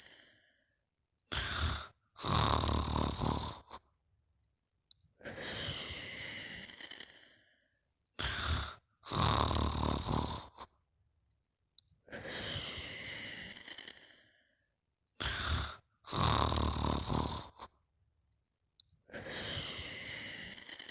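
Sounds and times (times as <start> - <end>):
person snoring: 1.3 - 3.8, 5.3 - 7.4, 8.2 - 10.8, 12.2 - 14.4, 15.2 - 17.8, 19.2 - 20.9.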